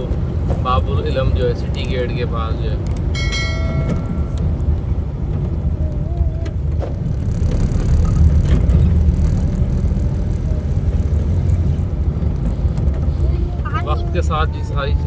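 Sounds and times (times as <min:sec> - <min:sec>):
car engine and tyre rumble: 0:00.0 - 0:15.0.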